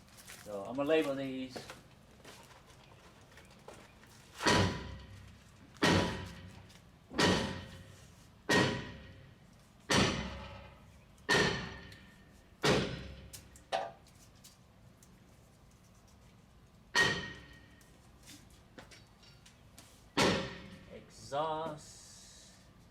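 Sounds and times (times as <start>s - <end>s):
hammer striking metal: 4.4s - 5.2s, 5.8s - 9.3s, 9.9s - 13.4s, 16.9s - 17.8s, 20.2s - 20.9s.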